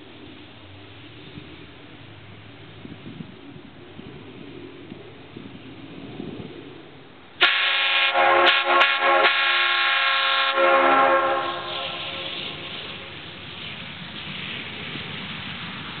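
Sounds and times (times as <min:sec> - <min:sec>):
air horn chord blast: 0:07.4 - 0:13.1
horn echo from woods: 0:07.4 - 0:13.2.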